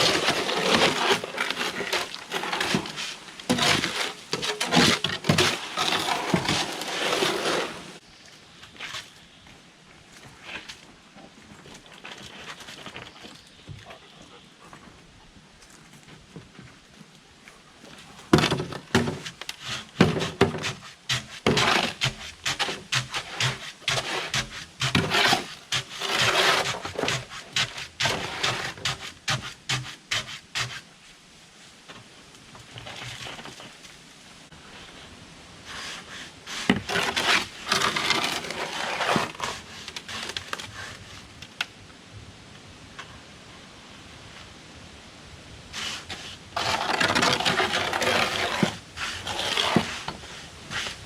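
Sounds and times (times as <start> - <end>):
scraping and knocking strokes: 0.0 - 8.0, 17.9 - 30.9, 35.7 - 41.1, 45.8 - 51.0.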